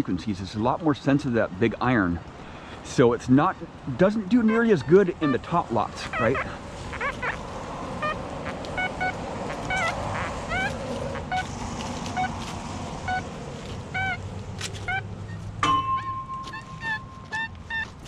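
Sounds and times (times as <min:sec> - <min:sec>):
coil sweeping ground: 0:02.8 - 0:18.0
metal detector beeps: 0:15.6 - 0:17.9.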